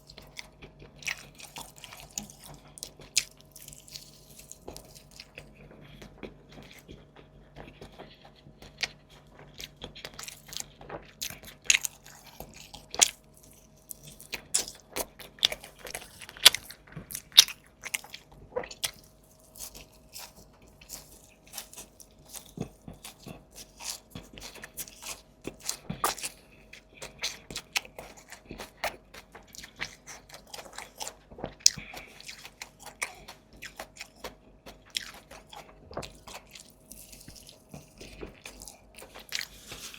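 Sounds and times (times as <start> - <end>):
person chewing crunchy food: 0.0 - 39.9
wet mouth sounds: 14.0 - 39.9.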